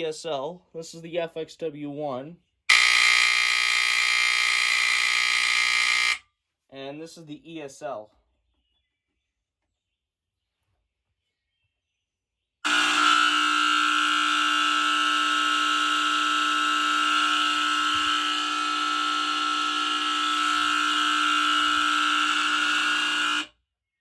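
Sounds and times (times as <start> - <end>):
smoke alarm tone: 2.7 - 6.2, 12.7 - 23.5.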